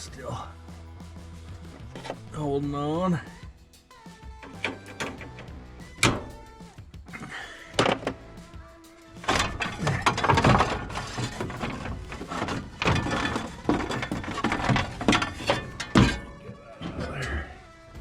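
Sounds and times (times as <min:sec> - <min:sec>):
car parts clattering and scraping: 0:01.7 - 0:02.6, 0:04.4 - 0:08.5, 0:09.2 - 0:18.0.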